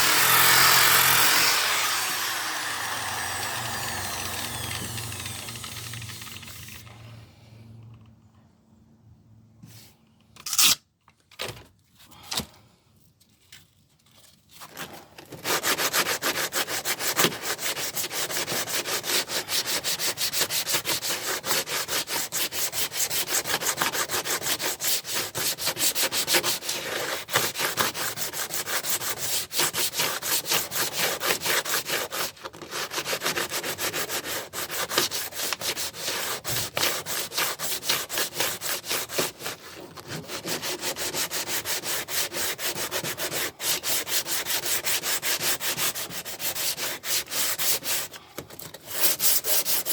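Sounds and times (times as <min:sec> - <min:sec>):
sandpaper sanding steel: 0:15.4 - 0:48.2, 0:48.8 - 0:49.9.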